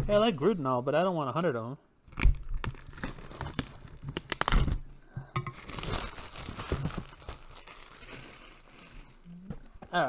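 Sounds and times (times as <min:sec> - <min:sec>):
packaging tearing: 0:02.1 - 0:09.4
plastic wrap crinkling: 0:02.1 - 0:10.0.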